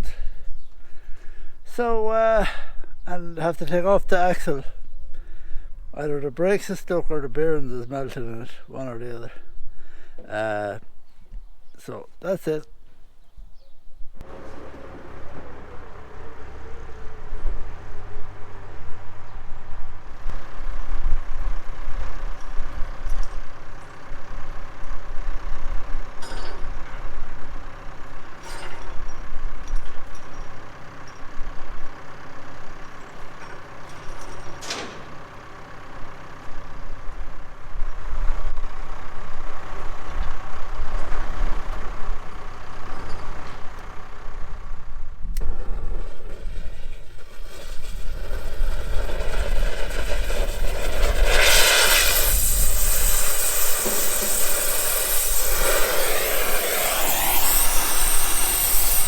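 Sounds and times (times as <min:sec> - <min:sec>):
heavy vehicle engine rumbling: 0:14.2 - 0:59.0.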